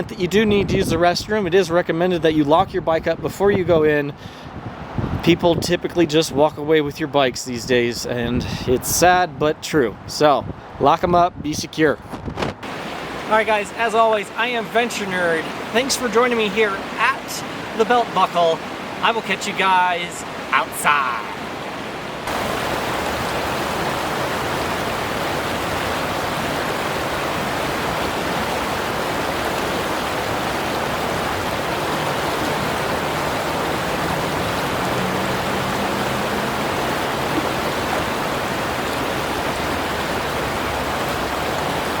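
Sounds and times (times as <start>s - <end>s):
rushing mountain water: 12.6s - 42.0s.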